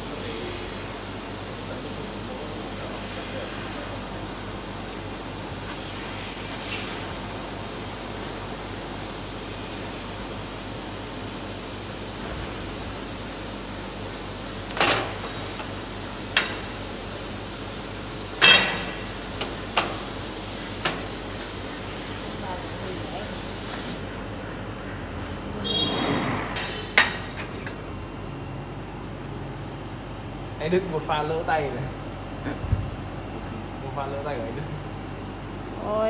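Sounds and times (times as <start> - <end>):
laser cutting machine hiss: 0.0 - 24.2
sharp metal clanks: 18.4 - 19.0.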